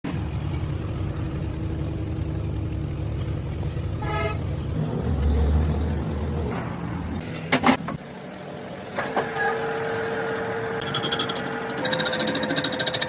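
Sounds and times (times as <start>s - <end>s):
vehicle engine running: 0.0s - 7.2s.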